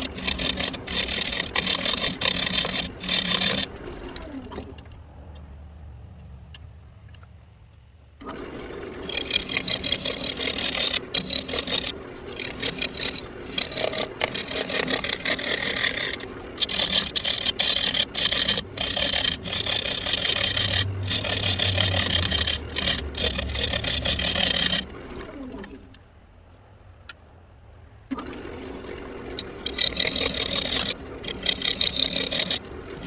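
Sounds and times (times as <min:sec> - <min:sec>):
lathe humming: 0:00.0 - 0:04.6, 0:08.2 - 0:25.9, 0:28.1 - 0:33.0
lathe tool scraping wood: 0:00.0 - 0:04.7, 0:08.2 - 0:25.9, 0:28.1 - 0:33.0.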